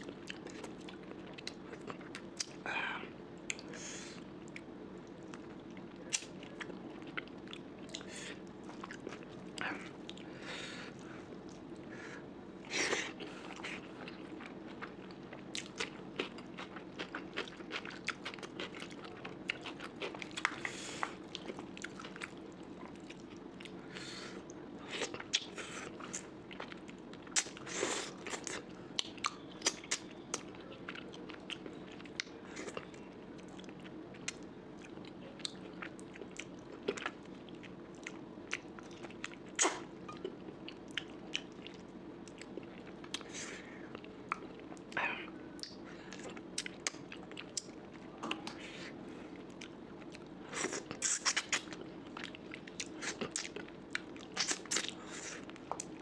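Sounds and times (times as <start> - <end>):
person chewing food: 0.0 - 2.6, 3.4 - 11.9, 12.6 - 56.0
food crunching: 12.9 - 23.8, 49.4 - 56.0.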